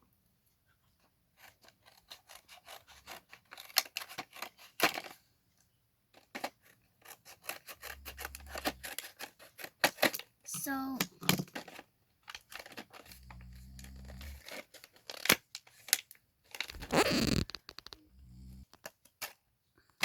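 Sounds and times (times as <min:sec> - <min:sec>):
scissors snipping plastic packaging: 0:01.4 - 0:05.1, 0:06.3 - 0:10.8, 0:12.3 - 0:18.0.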